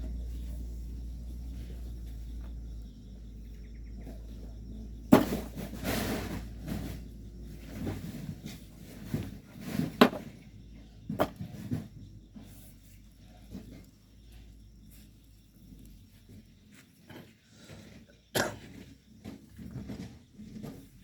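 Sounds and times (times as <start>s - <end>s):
tools scraping sand and stone: 5.1s - 10.4s, 11.1s - 11.9s
tool knocking on stone: 10.0s - 10.3s, 11.2s - 11.4s.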